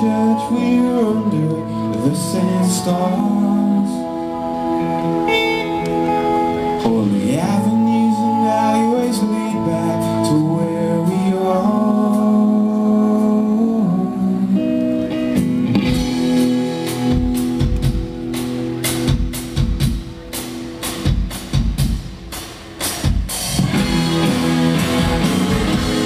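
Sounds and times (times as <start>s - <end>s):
guitar: 0.0s - 26.0s
live rock band playing: 0.0s - 26.0s
drum and cymbal hits: 15.8s - 26.0s.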